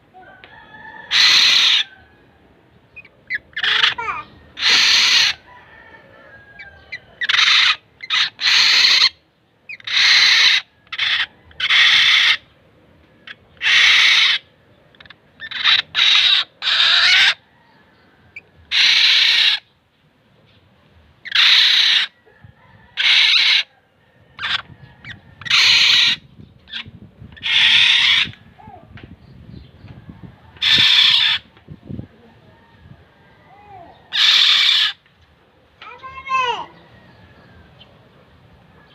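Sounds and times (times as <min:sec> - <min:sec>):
bird giving harsh calls: 0:01.1 - 0:01.9, 0:03.0 - 0:05.5, 0:07.2 - 0:12.4, 0:13.3 - 0:17.4, 0:18.7 - 0:19.7, 0:21.2 - 0:22.2, 0:23.0 - 0:23.7, 0:25.4 - 0:28.6, 0:30.6 - 0:31.5, 0:34.0 - 0:35.0.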